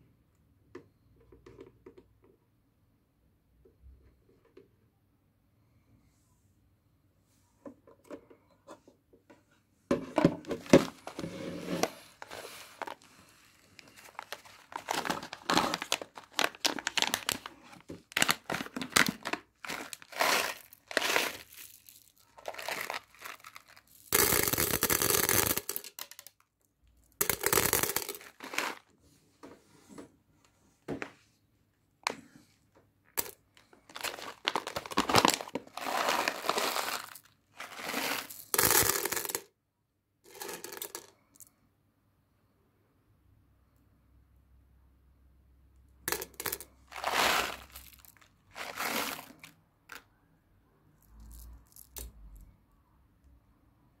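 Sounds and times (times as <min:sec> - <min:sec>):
crinkling and rustling handling: 0:07.6 - 0:24.1, 0:27.9 - 0:31.4, 0:32.0 - 0:38.5, 0:46.5 - 0:50.0.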